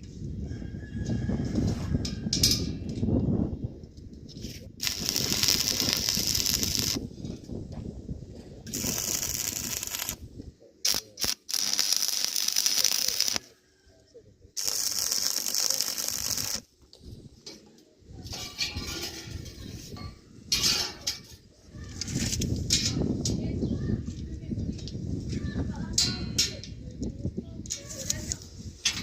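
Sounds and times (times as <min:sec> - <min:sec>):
arc welding crackling hiss: 0:04.8 - 0:07.0, 0:08.7 - 0:10.2, 0:10.9 - 0:13.4, 0:14.6 - 0:16.7.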